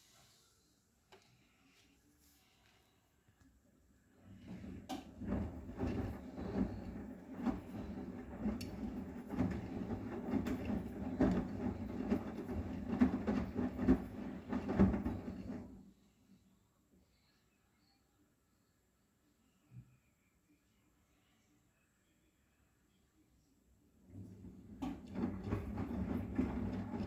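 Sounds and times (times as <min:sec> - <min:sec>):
washing machine drum turning: 0:04.4 - 0:15.8, 0:24.1 - 0:27.0
laundry thudding in drum: 0:04.9 - 0:15.8, 0:24.4 - 0:27.0.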